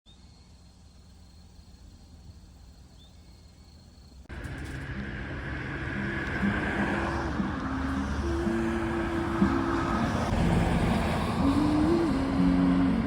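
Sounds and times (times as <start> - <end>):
background music low notes: 4.3 - 13.0.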